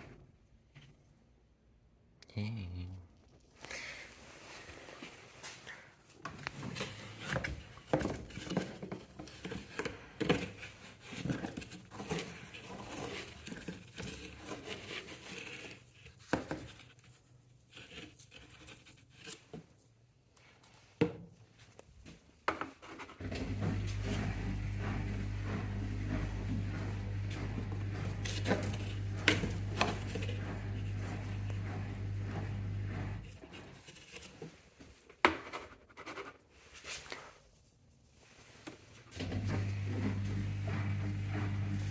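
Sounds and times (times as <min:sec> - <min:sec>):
washing machine knocks and rustling: 0:23.2 - 0:33.2
washing machine low hum: 0:23.2 - 0:33.8, 0:39.1 - 0:41.9.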